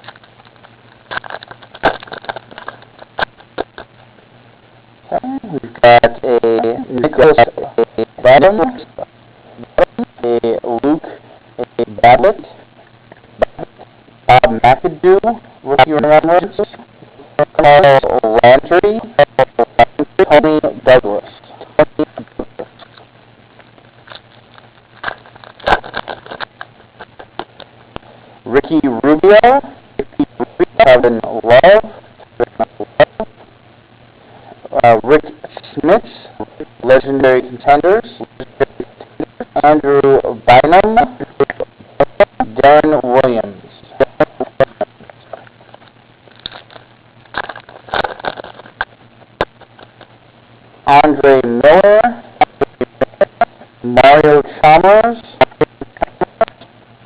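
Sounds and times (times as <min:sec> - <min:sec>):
trading cards clicking and rustling: 0:01.1 - 0:03.9.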